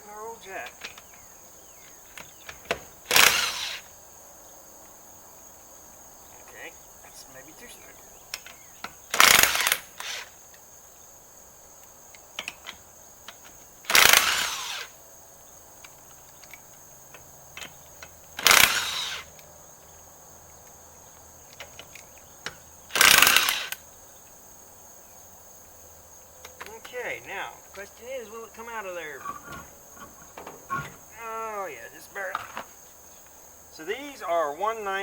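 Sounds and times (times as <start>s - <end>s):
impact wrench spinning lug nut: 2.2s - 3.9s, 8.4s - 10.3s, 13.3s - 14.9s, 18.0s - 19.4s, 22.9s - 23.8s.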